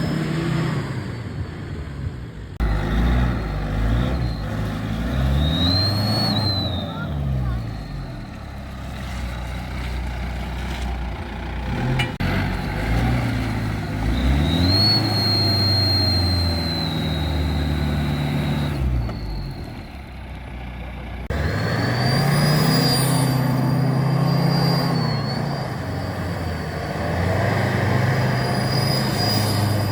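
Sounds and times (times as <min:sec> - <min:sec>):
engine revving: 0:00.0 - 0:10.9, 0:11.5 - 0:20.0, 0:21.1 - 0:29.9
high exhaust whistle: 0:04.1 - 0:07.1, 0:14.2 - 0:19.4, 0:21.3 - 0:29.9.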